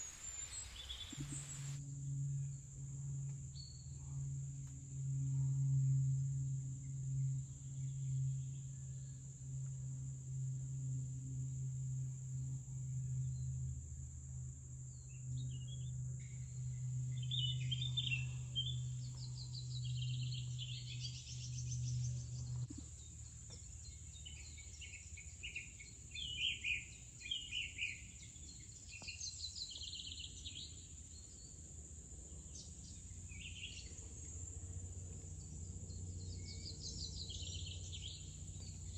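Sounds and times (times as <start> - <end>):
songbirds chirping: 0.0 - 1.8, 15.0 - 38.9
insect chorus: 0.0 - 2.7, 6.0 - 38.9
low steady hum: 0.0 - 38.9.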